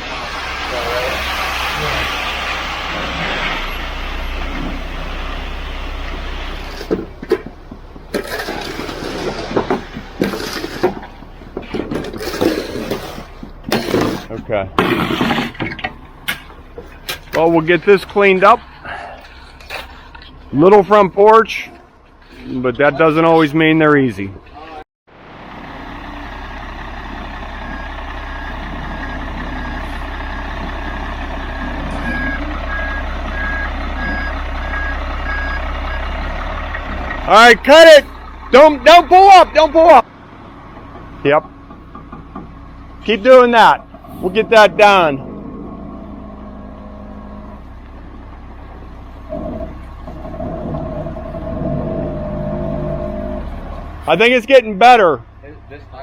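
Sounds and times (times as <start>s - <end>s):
diesel engine running: 0.0s - 56.0s
truck back-up alarm beeping: 26.6s - 37.2s.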